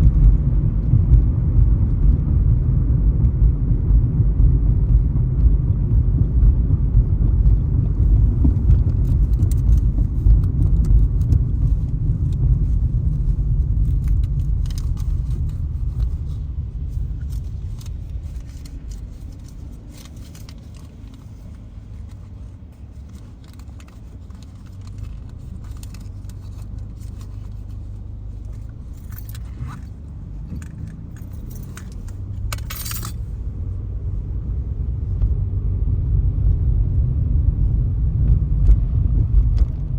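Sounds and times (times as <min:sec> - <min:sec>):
car engine and road rumble: 0:00.0 - 0:39.9
light jingling and clicks: 0:08.0 - 0:33.4
short rattle: 0:08.1 - 0:33.4.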